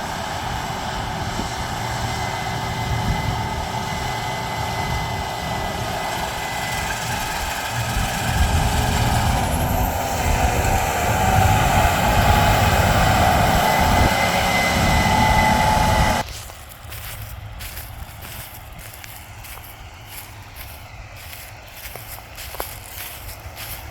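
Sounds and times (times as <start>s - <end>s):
whining tone: 0.0s - 16.2s
harvest machinery engine rumbling: 0.0s - 23.9s.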